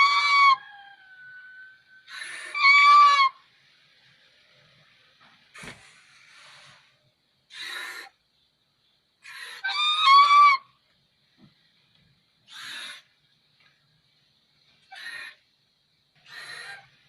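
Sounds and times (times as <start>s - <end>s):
swan honking calls: 0.0s - 0.7s, 2.0s - 3.4s, 9.3s - 10.7s.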